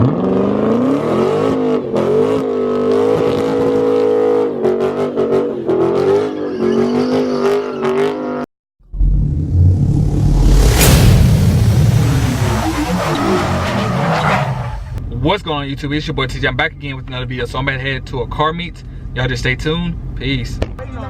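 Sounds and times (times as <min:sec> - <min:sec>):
car engine revving high: 0:00.0 - 0:15.0
deep low engine rumble: 0:08.8 - 0:13.7.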